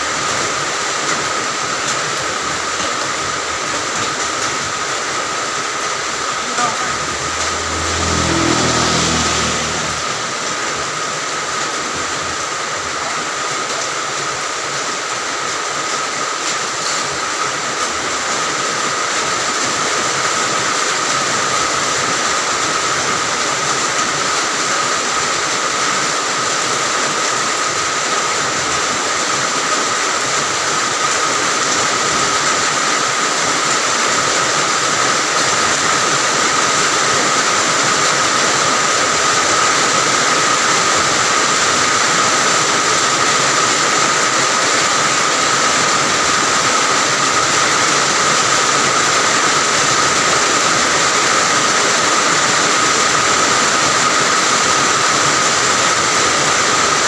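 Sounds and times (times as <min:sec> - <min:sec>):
heavy rain hissing: 0:00.0 - 0:57.0
passing vehicle engine hum: 0:02.4 - 0:13.0
steady high tone: 0:06.0 - 0:11.5.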